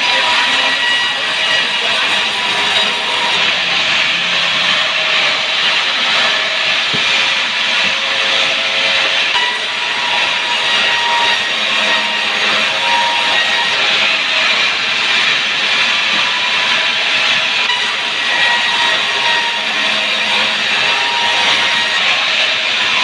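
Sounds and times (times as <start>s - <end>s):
saw cutting through wood: 0.0s - 23.0s.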